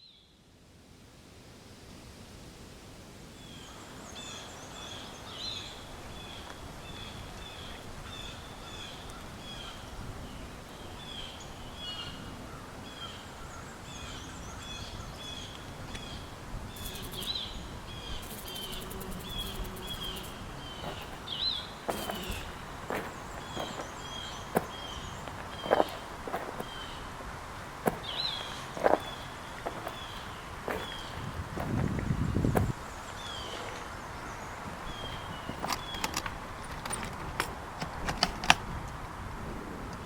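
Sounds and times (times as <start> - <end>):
outdoor background hiss: 0.0 - 40.0
bird chirping: 16.8 - 27.1, 27.8 - 33.5.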